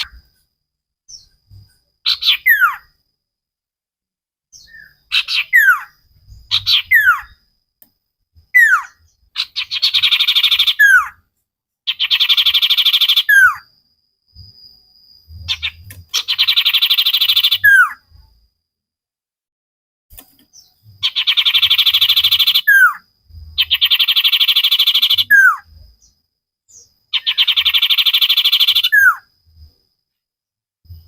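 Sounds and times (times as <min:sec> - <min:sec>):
bird whistling: 0:02.1 - 0:02.9, 0:04.6 - 0:07.4, 0:08.5 - 0:11.2, 0:11.9 - 0:13.7, 0:15.5 - 0:18.0, 0:20.6 - 0:23.0, 0:23.6 - 0:25.7, 0:26.7 - 0:29.3
bird buzzy trills: 0:04.6 - 0:07.5, 0:15.2 - 0:18.2, 0:20.2 - 0:29.3.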